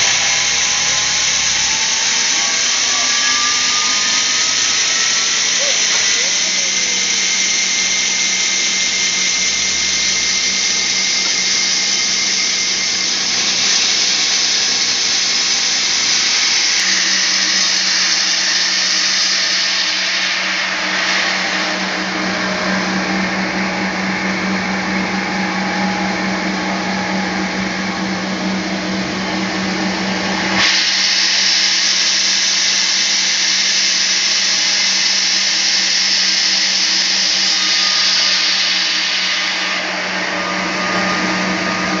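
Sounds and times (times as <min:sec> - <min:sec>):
band sawmill cutting log: 0:00.0 - 0:42.0.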